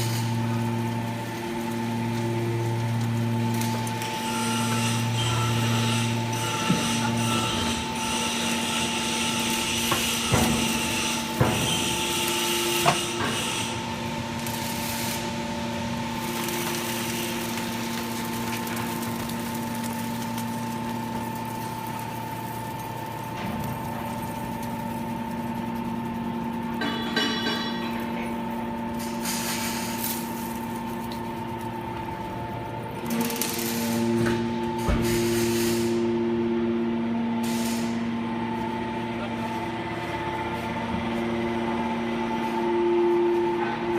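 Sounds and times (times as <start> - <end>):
metal clanks: 26.8 - 28.0.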